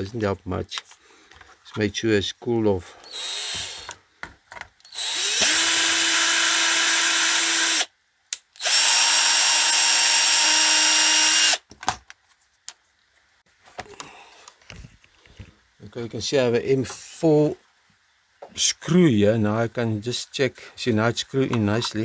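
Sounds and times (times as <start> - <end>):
electric drill running: 3.0 - 3.9, 4.9 - 7.9, 8.6 - 11.6.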